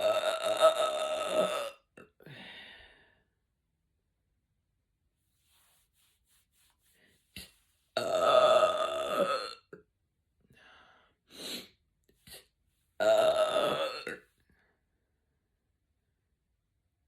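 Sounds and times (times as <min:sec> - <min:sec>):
woman belching: 0:00.0 - 0:02.1, 0:08.0 - 0:09.8, 0:13.0 - 0:14.2.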